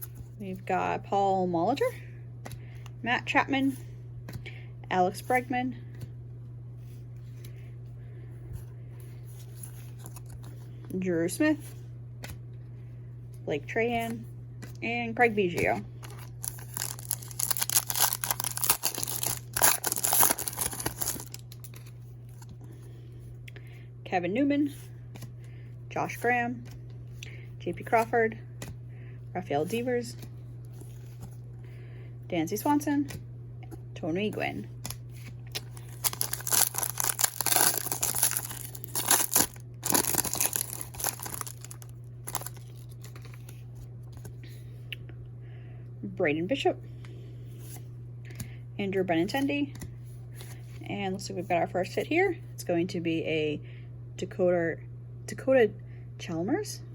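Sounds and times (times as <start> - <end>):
low electrical hum: 0.0 - 56.9
wrapper tearing and crinkling: 16.0 - 21.9, 35.5 - 43.5.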